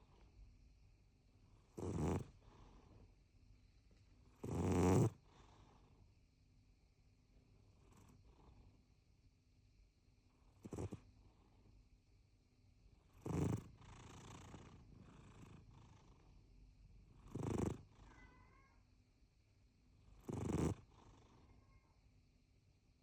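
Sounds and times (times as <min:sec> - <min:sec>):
cat snoring: 0:01.6 - 0:03.0, 0:04.3 - 0:06.0, 0:07.7 - 0:08.7, 0:10.5 - 0:11.4, 0:13.0 - 0:16.3, 0:17.1 - 0:18.4, 0:20.0 - 0:21.6.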